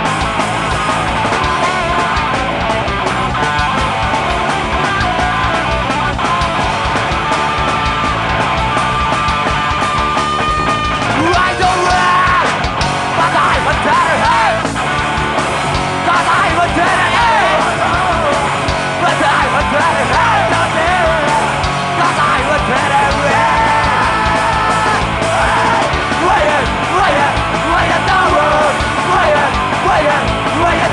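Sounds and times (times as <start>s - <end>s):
punk rock band playing: 0.0s - 30.9s
person yelling vocals: 11.2s - 12.6s, 19.1s - 30.9s.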